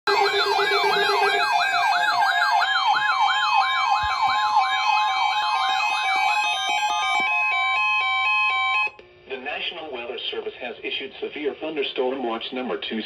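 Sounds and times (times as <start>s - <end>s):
electronic wailing siren: 0.1s - 9.0s.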